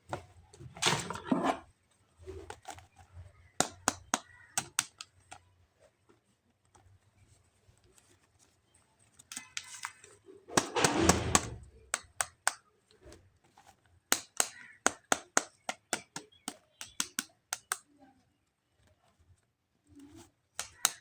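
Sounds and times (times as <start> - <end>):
sharp plastic clicks: 3.4 - 5.5, 9.2 - 13.2, 14.1 - 18.0, 20.5 - 21.0.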